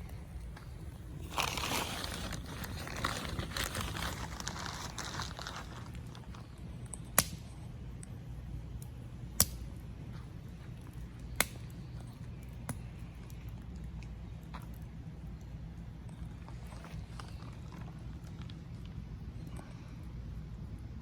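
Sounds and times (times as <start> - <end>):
wood popping in campfire: 0.0 - 7.5, 8.7 - 9.8, 10.5 - 15.5
faint fire crackles: 0.0 - 21.0
low steady rumble: 0.0 - 21.0.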